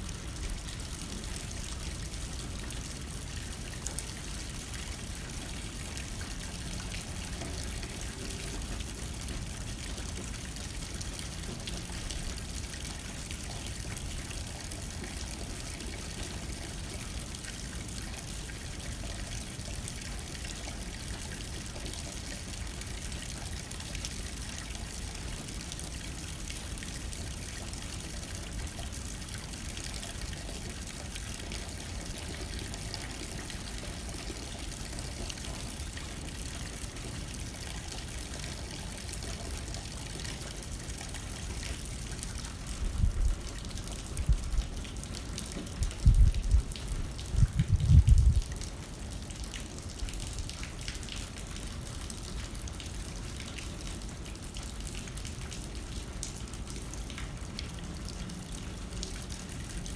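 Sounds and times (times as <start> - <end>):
rain hitting window pane: 42.2 - 51.3
light wind rumble: 42.7 - 43.5, 44.1 - 44.8, 45.7 - 48.6.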